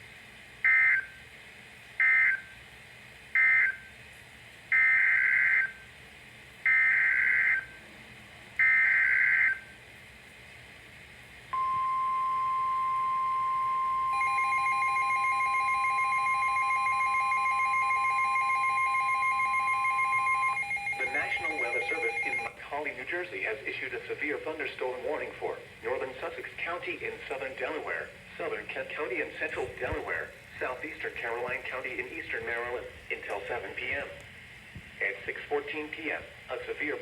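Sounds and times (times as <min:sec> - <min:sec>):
data bursts: 0:11.6 - 0:22.5
pulsing alarm tone: 0:11.6 - 0:22.5
steady alert tone: 0:11.6 - 0:22.5.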